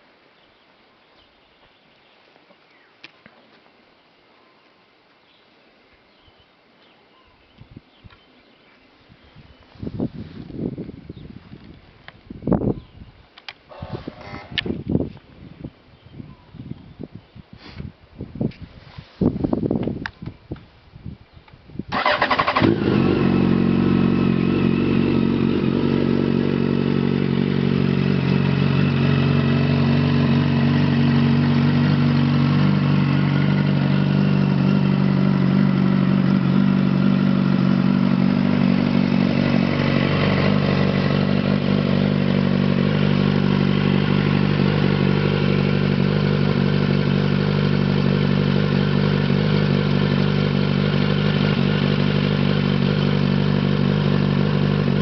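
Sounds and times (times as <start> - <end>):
motorcycle engine starting and idling: 13.7 - 14.9, 21.9 - 55.0.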